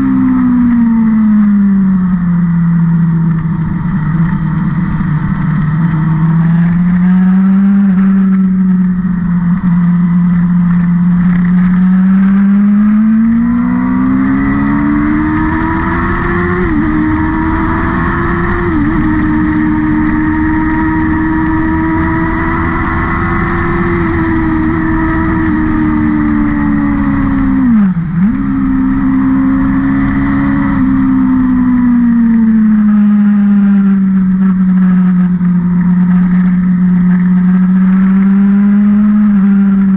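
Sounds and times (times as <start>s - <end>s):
race car engine accelerating: 10.4s - 35.3s.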